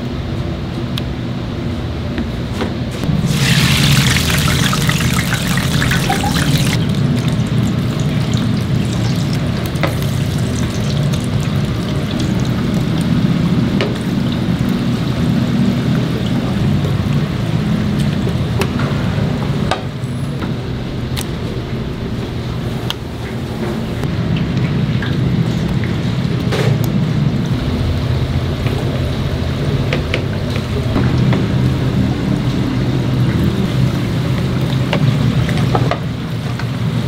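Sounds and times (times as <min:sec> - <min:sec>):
food sizzling in hot oil: 0:03.1 - 0:13.4.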